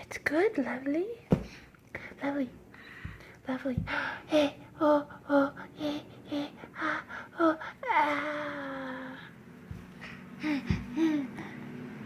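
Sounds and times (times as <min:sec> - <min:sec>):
dull low thumps: 0:03.0 - 0:04.1, 0:09.7 - 0:11.2.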